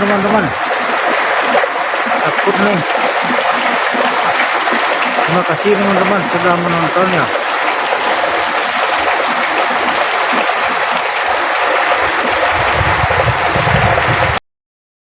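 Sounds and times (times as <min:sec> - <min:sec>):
heavy rain pouring: 0:00.0 - 0:14.4
low rumble: 0:12.5 - 0:14.4.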